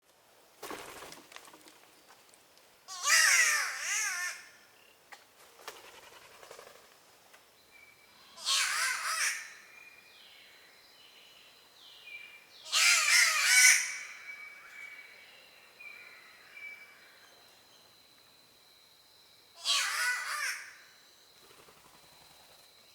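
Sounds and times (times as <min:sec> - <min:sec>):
bird cat-like yowls: 0:19.6 - 0:20.6.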